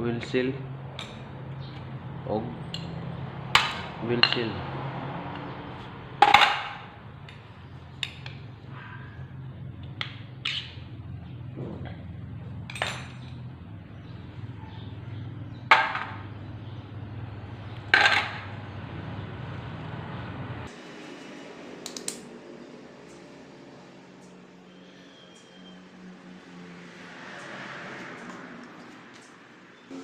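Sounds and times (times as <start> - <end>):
metal tools clinking: 12.6 - 13.4.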